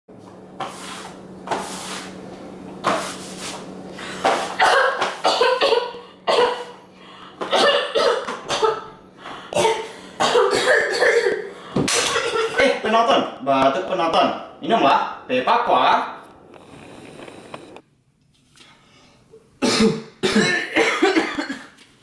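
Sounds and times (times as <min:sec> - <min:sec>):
faint steady hum: 0:00.2 - 0:21.9
person coughing: 0:04.5 - 0:06.8, 0:07.4 - 0:08.9, 0:09.5 - 0:12.9, 0:19.6 - 0:21.8.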